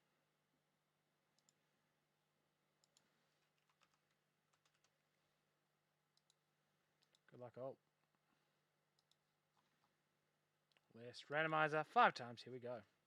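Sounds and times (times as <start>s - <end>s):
faint room hum: 0.0s - 13.0s.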